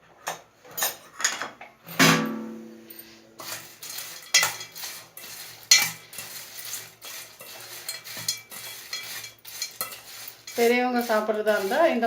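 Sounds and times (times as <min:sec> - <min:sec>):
spoon scraping a bowl: 0:03.0 - 0:12.0.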